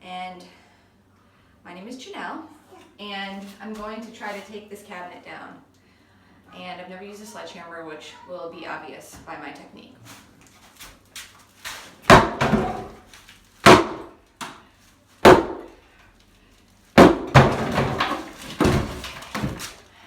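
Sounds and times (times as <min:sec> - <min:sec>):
sledgehammer hitting cabinet: 0:12.1 - 0:13.0, 0:13.6 - 0:14.1, 0:15.2 - 0:15.7, 0:17.0 - 0:19.7.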